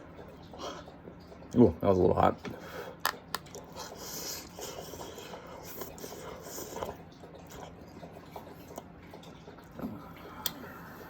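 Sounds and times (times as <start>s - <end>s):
person chewing noodles: 2.9s - 11.0s.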